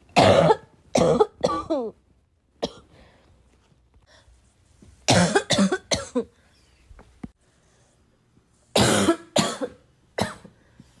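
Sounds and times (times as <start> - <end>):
person coughing harshly: 0.2 - 2.0, 2.6 - 2.9, 5.1 - 6.3, 8.8 - 10.5.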